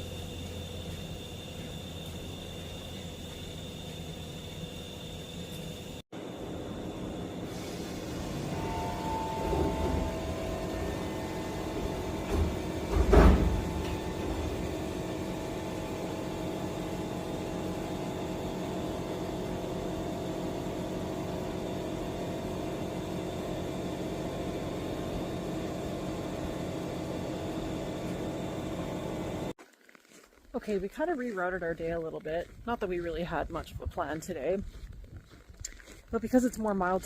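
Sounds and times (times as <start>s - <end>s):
vehicle engine idling: 0.0s - 29.5s
loud thump: 9.0s - 14.7s.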